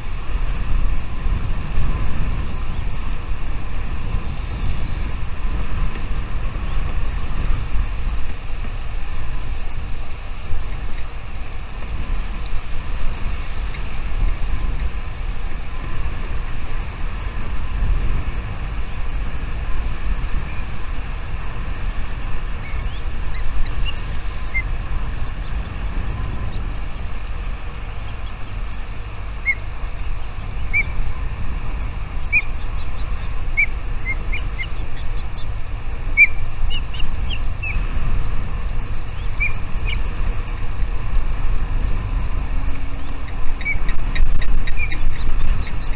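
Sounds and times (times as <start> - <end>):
low rumble: 0.0 - 45.9
small birds chirping: 20.4 - 40.9, 42.2 - 45.9.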